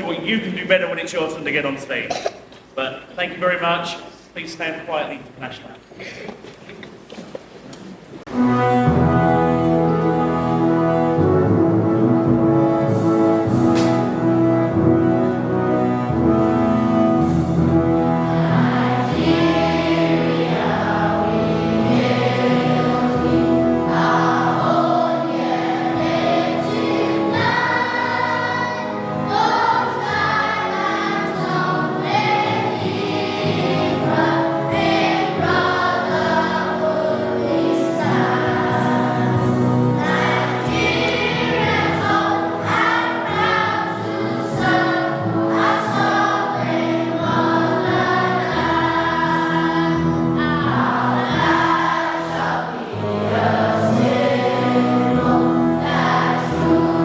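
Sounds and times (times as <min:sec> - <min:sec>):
instrumental accompaniment: 0:07.9 - 0:57.0
choir singing an anthem: 0:18.0 - 0:57.0.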